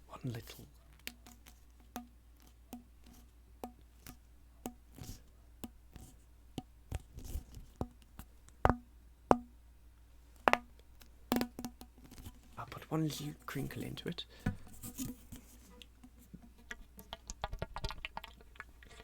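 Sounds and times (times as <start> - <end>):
tapping on a hollow object: 1.0 - 2.1, 3.6 - 3.8, 8.6 - 9.6, 10.4 - 10.7, 11.3 - 12.3, 14.4 - 15.1.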